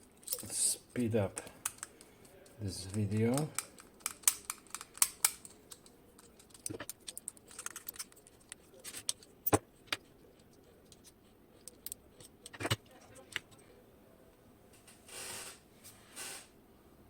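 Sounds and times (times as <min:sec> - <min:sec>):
small metallic clicks and taps: 0:01.4 - 0:13.6.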